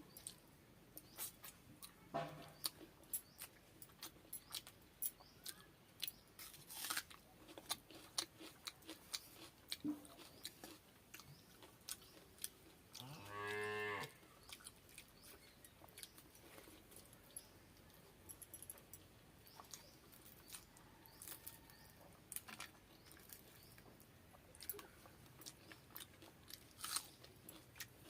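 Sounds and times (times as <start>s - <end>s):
chewing and mouth clicks: 2.6s - 13.6s, 14.3s - 28.0s
cow mooing: 13.0s - 14.2s.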